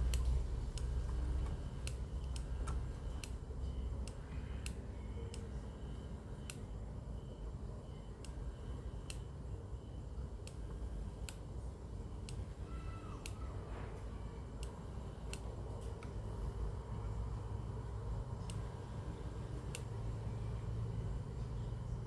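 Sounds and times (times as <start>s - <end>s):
sharp clicks: 0.0s - 3.4s.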